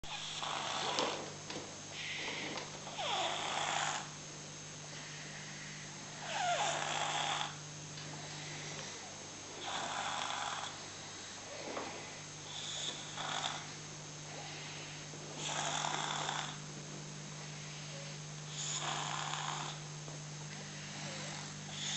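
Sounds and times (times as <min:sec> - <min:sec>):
baby snoring: 0:00.0 - 0:01.3, 0:02.0 - 0:04.1, 0:06.1 - 0:07.6, 0:09.6 - 0:16.6, 0:17.9 - 0:19.8, 0:20.6 - 0:21.9.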